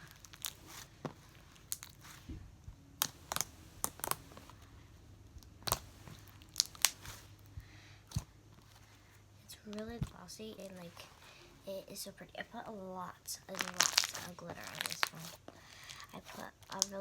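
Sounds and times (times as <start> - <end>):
slime clicking and popping: 3.0 - 4.5, 5.4 - 7.2, 13.5 - 15.3, 16.7 - 17.0.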